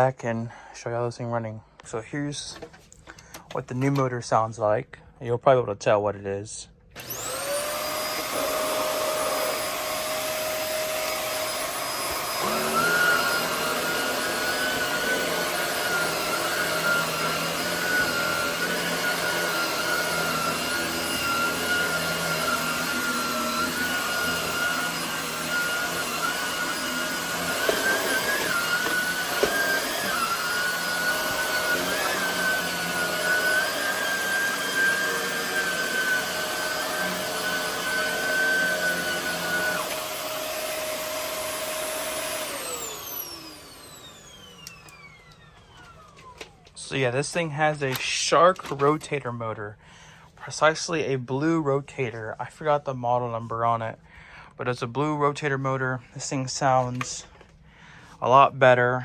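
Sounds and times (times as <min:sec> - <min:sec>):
vacuum cleaner whine: 0:07.0 - 0:47.2.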